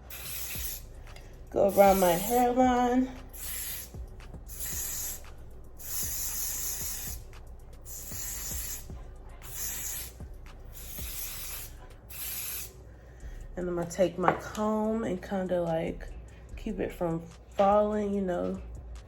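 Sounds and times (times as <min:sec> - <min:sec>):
aerosol spray hissing: 0:00.0 - 0:12.8.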